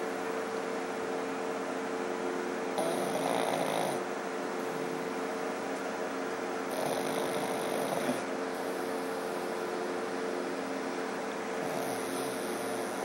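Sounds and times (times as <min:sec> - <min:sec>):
steady low hum: 0:00.0 - 0:13.0
dog snoring: 0:02.8 - 0:05.1, 0:06.7 - 0:09.5, 0:11.6 - 0:13.0.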